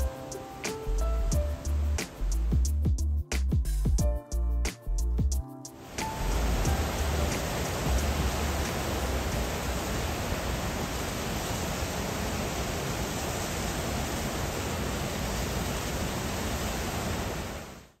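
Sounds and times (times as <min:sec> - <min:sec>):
steady rushing noise: 0:05.7 - 0:18.0.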